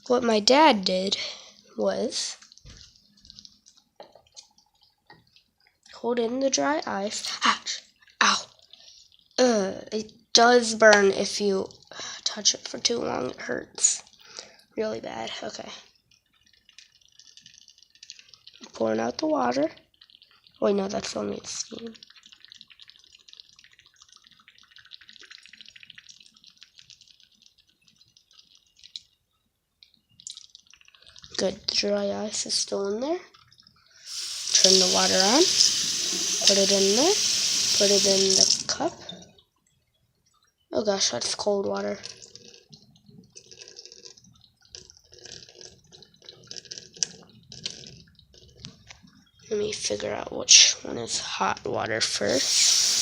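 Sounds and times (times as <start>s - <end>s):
water bubbling with dry ice: 1.8s - 39.4s, 40.2s - 51.4s, 52.0s - 53.0s
dry ice fizzing in water: 34.0s - 39.1s, 52.1s - 53.0s.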